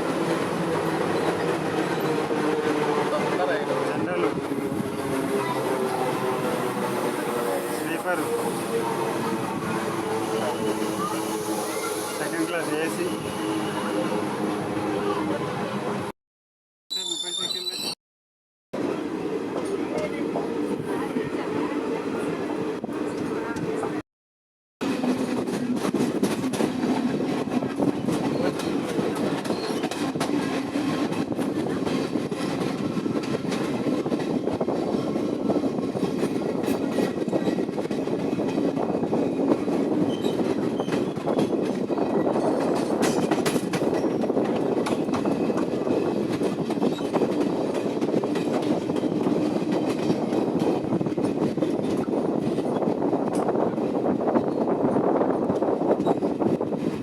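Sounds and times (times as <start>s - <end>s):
rail clicks: 24.8s - 57.0s
train wheels rumbling on rails: 24.8s - 57.0s.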